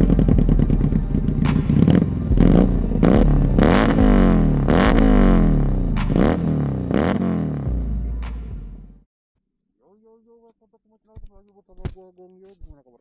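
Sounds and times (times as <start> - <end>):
motorcycle engine idling and revving: 0.0 - 9.0.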